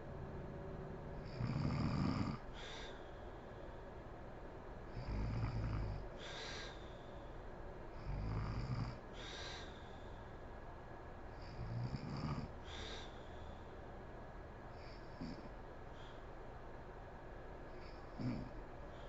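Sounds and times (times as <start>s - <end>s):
woman snoring: 1.2s - 2.4s, 5.0s - 6.4s, 8.1s - 9.0s, 11.4s - 12.5s, 17.8s - 18.5s
hiss of breath: 6.2s - 7.2s.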